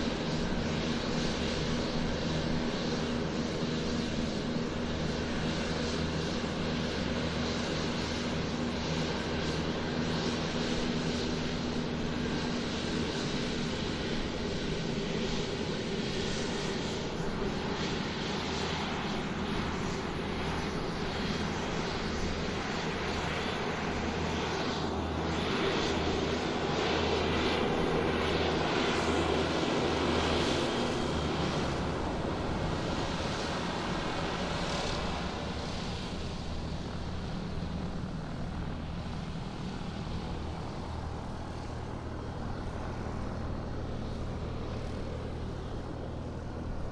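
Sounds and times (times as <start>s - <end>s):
airplane engine droning: 0.0s - 46.9s.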